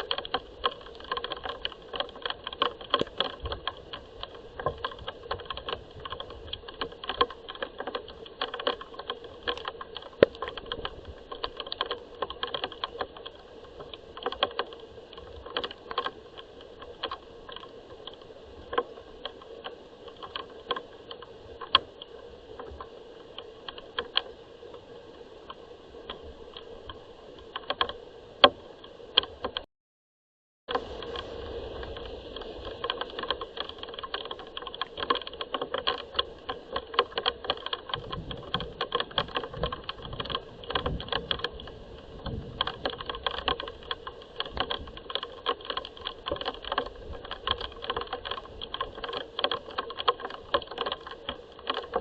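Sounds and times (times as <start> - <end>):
rain pattering on hard surface: 0.0 - 29.6, 30.7 - 52.0.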